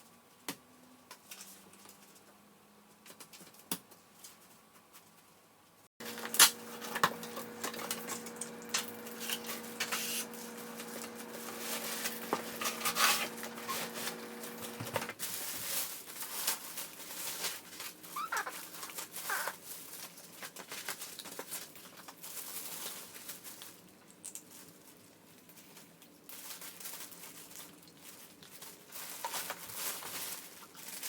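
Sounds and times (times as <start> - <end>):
steady low hum: 6.0 - 15.2.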